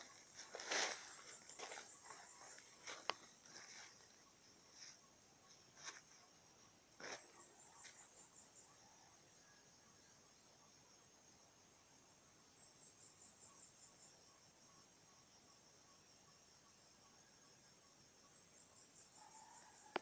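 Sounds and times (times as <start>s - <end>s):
soft rustles: 0.0s - 4.2s
high-pitched insect chirping: 0.0s - 8.8s.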